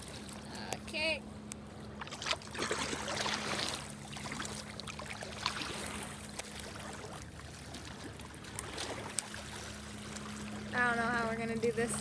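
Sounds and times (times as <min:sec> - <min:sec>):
low hum: 0:00.0 - 0:12.0
water lapping at shore: 0:00.0 - 0:12.0.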